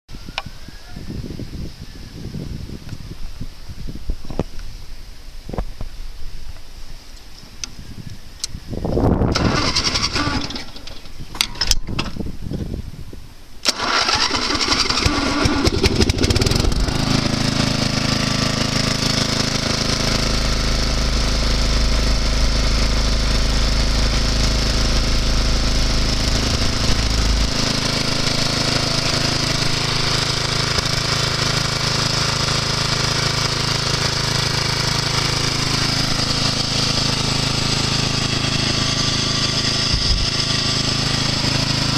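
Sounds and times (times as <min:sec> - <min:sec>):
lawn tractor engine running: 0:09.3 - 0:12.1, 0:13.6 - 0:41.9
lawn tractor engine cranking: 0:09.3 - 0:12.2, 0:13.6 - 0:41.9.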